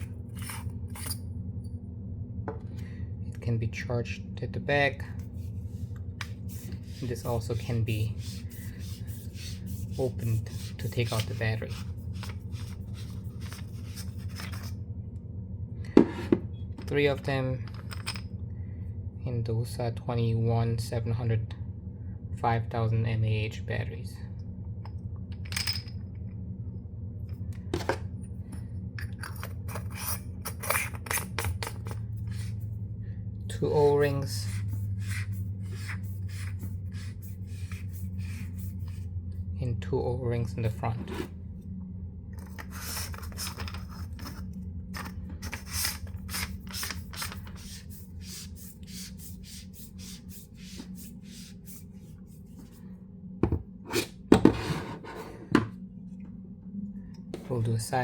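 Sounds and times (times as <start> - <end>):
steady low hum: 0.0 - 58.0
metal parts clicking and scraping: 29.0 - 32.0.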